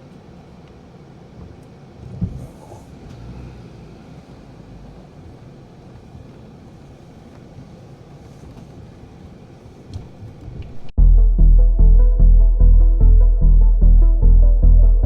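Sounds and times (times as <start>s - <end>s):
vehicle rumbling: 0.4s - 11.0s.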